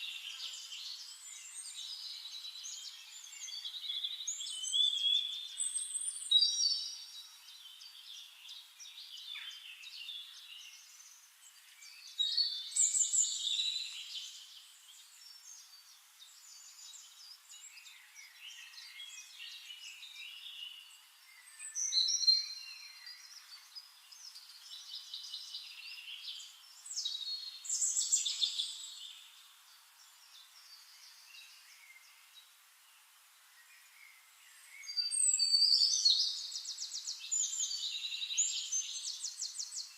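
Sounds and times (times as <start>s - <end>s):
birds singing and chirping: 0.0s - 39.9s.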